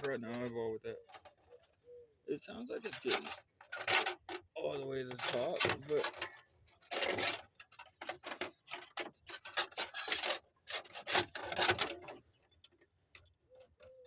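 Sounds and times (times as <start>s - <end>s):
wire scraping through passage: 2.7s - 12.2s.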